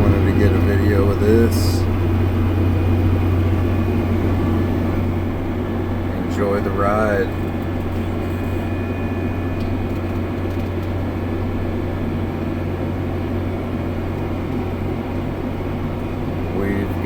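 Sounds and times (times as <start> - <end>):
fan-like hiss: 0.0 - 9.9
tractor engine drone: 0.0 - 17.0.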